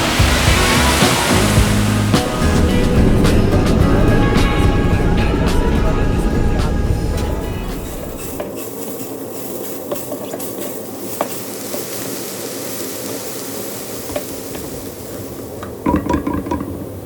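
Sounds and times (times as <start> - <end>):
food sizzling in a pan: 0.0 - 2.9, 9.9 - 16.2.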